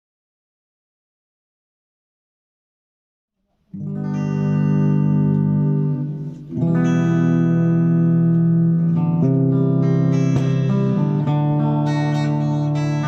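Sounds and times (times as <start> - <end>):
acoustic guitar chords strummed: 3.8 - 13.0.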